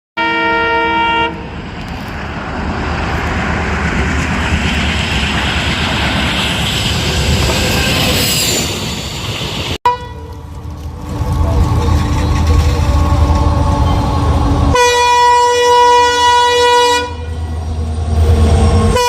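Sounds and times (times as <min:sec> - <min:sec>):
locomotive horn chord: 0:00.2 - 0:01.5, 0:09.9 - 0:10.6, 0:13.5 - 0:17.6, 0:18.7 - 0:19.0
passing train rumble: 0:00.2 - 0:19.0.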